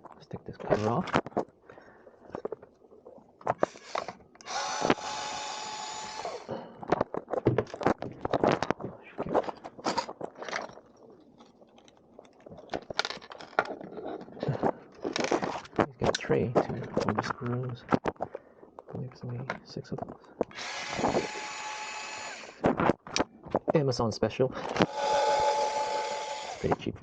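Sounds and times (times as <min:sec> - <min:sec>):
plastic parts clicking: 0:03.4 - 0:05.5, 0:06.3 - 0:23.8
electric screwdriver whine: 0:03.6 - 0:06.5, 0:20.5 - 0:22.6, 0:24.7 - 0:26.8.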